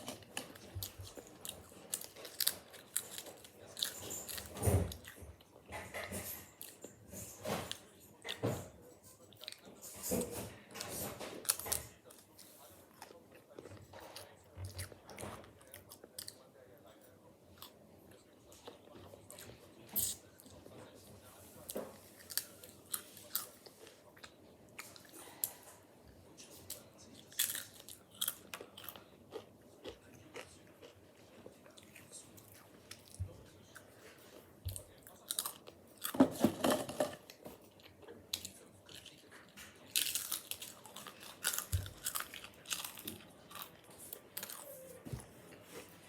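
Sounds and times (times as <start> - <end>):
potato chips crunching: 0.0 - 4.5, 26.7 - 31.4, 39.8 - 44.8.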